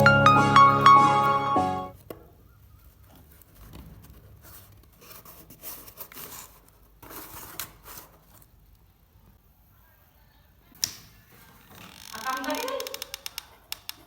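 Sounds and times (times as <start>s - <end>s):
piano music: 0.0s - 2.0s
scraping and rustling cardboard: 3.2s - 8.6s.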